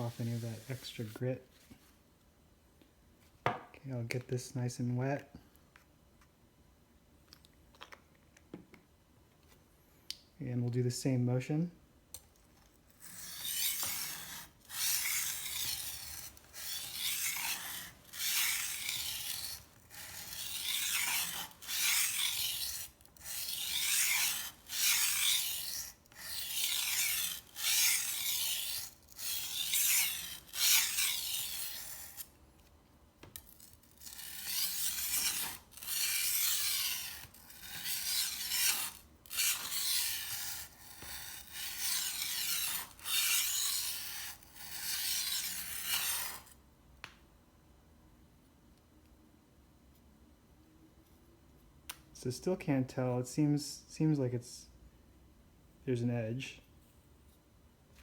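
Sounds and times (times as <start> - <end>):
knife scraping on whetstone: 13.0 - 32.4, 33.4 - 46.6.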